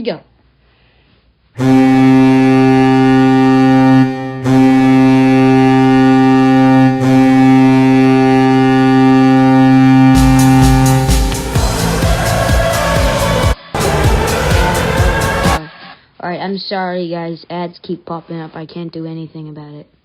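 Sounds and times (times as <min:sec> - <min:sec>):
deep hockey goal horn: 0:01.6 - 0:15.6.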